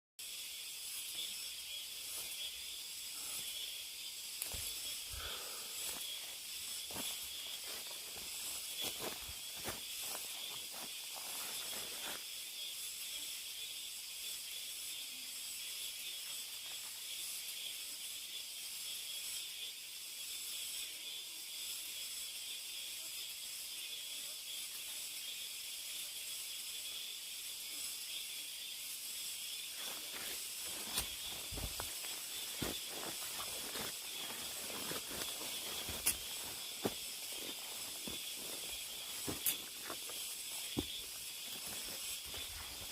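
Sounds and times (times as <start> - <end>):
cicadas buzzing: 0.2 - 42.9
footsteps crunching: 4.4 - 12.2, 29.8 - 42.9.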